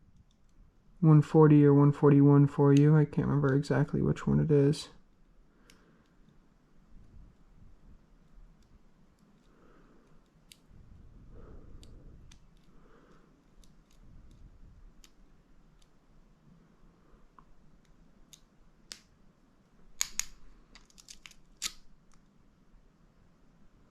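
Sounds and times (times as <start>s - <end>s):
faint padlock handling noise: 11.8s - 16.0s, 20.0s - 22.3s
lock pick metallic clicks: 20.0s - 21.8s.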